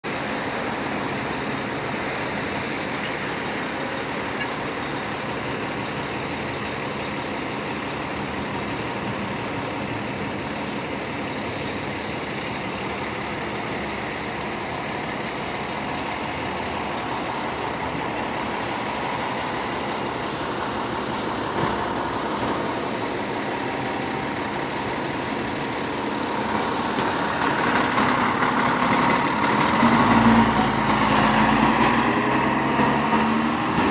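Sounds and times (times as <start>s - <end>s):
diesel engines idling: 0.1s - 33.9s
air brake hisses: 18.4s - 21.6s.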